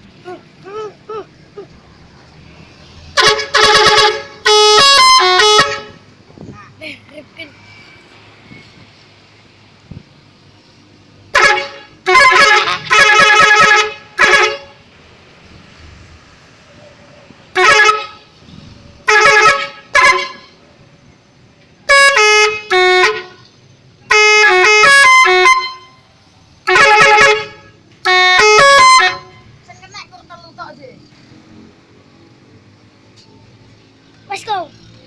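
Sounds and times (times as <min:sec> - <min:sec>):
multi-note bus horn blasts: 0:03.1 - 0:06.1, 0:11.3 - 0:14.9, 0:17.5 - 0:18.4, 0:19.0 - 0:20.6, 0:21.8 - 0:29.6.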